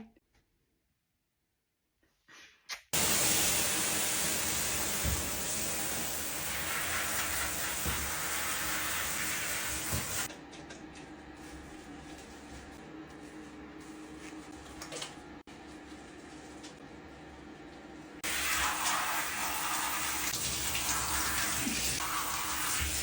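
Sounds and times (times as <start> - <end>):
shower water spraying: 3.0 - 10.3, 18.2 - 23.0.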